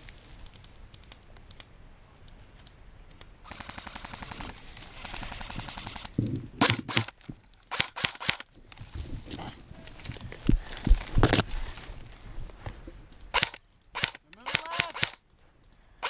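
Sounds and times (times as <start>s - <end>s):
airsoft guns firing: 3.4s - 8.5s, 13.3s - 15.2s
loud sharp cracks: 3.5s - 8.5s, 13.3s - 15.2s.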